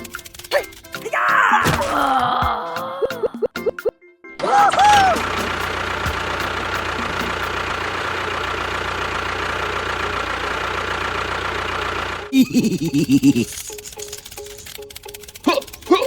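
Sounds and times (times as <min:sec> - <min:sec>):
motor humming with whine: 0:04.9 - 0:12.3.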